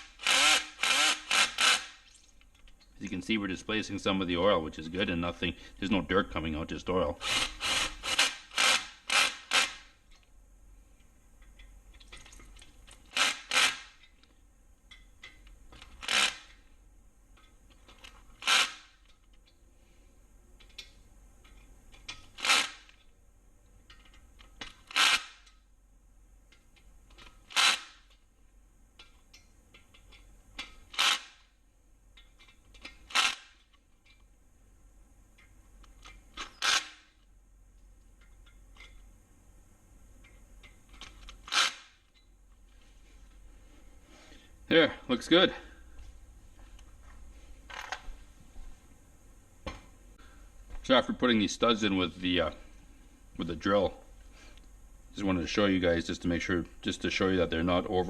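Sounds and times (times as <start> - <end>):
cordless drill bursts: 0.0 - 2.0, 7.2 - 9.8, 13.1 - 14.0, 16.0 - 16.4, 18.4 - 18.9, 22.4 - 22.9, 24.9 - 25.3, 27.5 - 28.0, 31.0 - 31.3, 36.6 - 37.0, 41.5 - 41.8.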